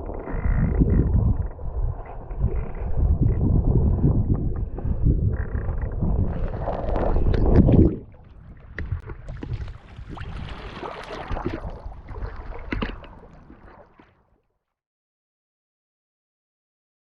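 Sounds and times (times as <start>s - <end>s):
muffled water sloshing: 0.0s - 14.3s
scattered clicks and crackles: 0.1s - 8.0s.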